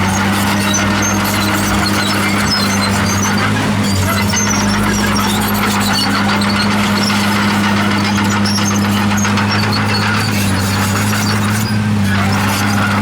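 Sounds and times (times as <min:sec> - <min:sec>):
bulldozer diesel engine running: 0:00.0 - 0:13.0
short high-pitched squeaks: 0:00.0 - 0:13.0.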